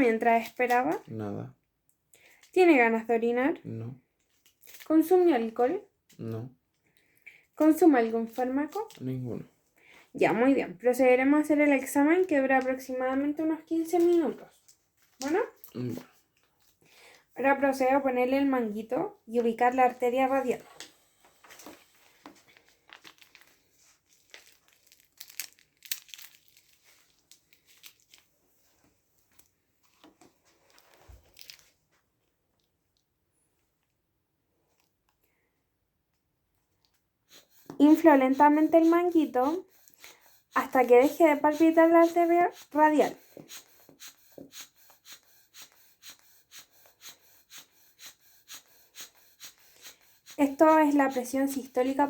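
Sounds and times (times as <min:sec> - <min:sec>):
rustling of cuff fabric: 0:20.4 - 0:34.0.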